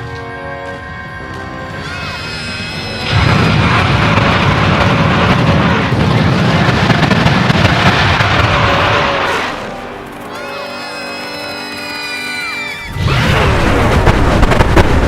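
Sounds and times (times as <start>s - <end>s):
film music: 0.0s - 14.6s
low rumbling crash effect: 3.1s - 9.6s, 13.0s - 15.0s.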